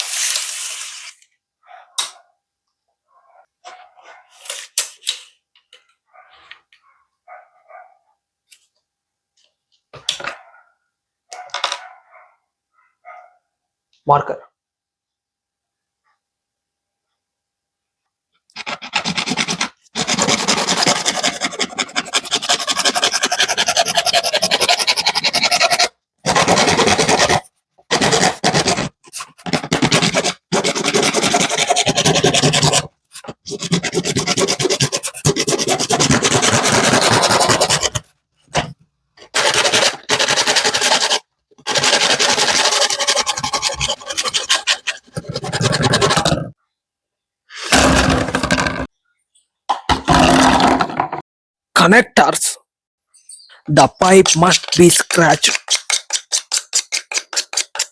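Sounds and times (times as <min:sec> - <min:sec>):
hand saw rasping through pipe: 0:18.5 - 0:38.1, 0:39.3 - 0:46.4, 0:54.3 - 0:57.9.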